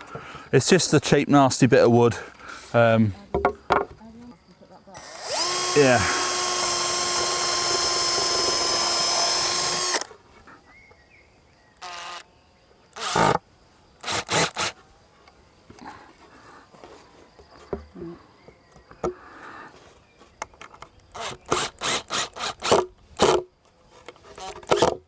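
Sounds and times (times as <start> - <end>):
power drill drilling into wood: 5.0 - 10.1, 13.0 - 13.4, 14.0 - 14.8.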